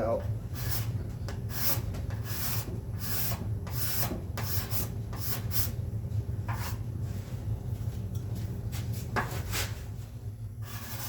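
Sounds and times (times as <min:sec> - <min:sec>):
scraper scraping wooden board: 0:10.6 - 0:11.0.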